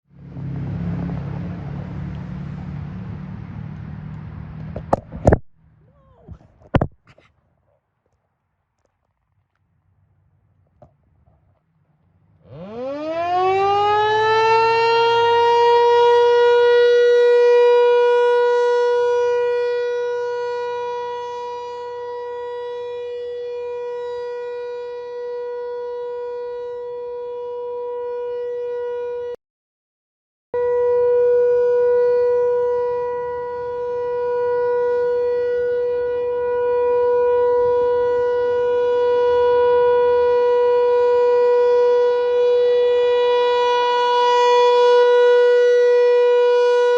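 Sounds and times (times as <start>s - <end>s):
tornado siren winding up: 12.4s - 29.3s, 30.6s - 46.9s.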